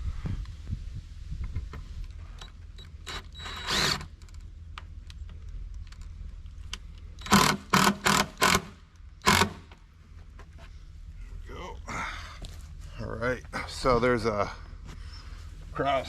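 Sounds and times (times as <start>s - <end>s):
steady low hum: 0.0s - 16.0s
power driver running: 7.2s - 9.8s.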